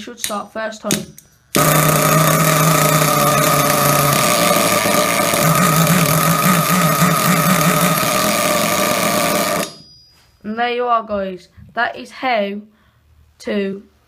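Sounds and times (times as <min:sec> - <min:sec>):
small nitro engine idling high-pitched: 0:01.6 - 0:09.8.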